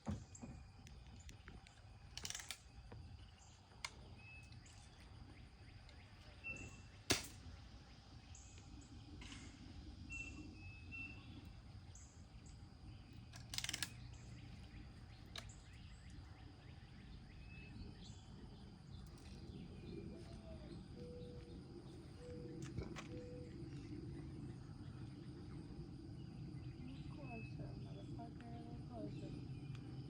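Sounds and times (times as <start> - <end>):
bird chirps: 3.2 - 7.1, 8.2 - 30.0
bb gun firing crack: 7.1 - 7.4.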